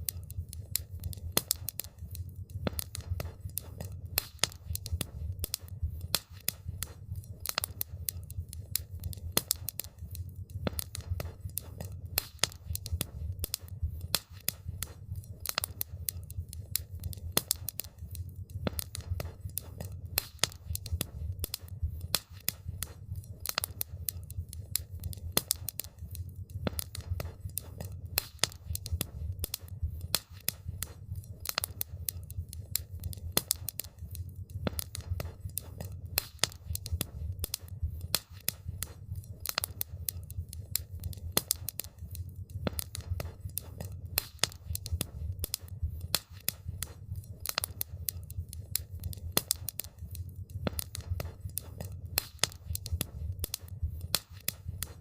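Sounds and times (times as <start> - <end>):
campfire crackling: 0.0 - 55.0.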